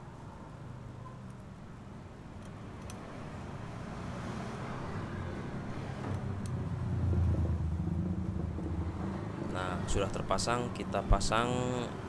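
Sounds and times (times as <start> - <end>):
low engine hum: 3.0 - 12.0.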